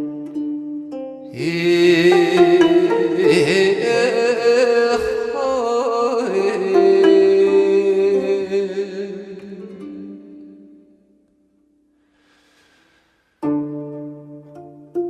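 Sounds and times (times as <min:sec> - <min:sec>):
plucked zither music: 0:00.0 - 0:11.1, 0:13.4 - 0:15.0
person singing: 0:01.2 - 0:11.0.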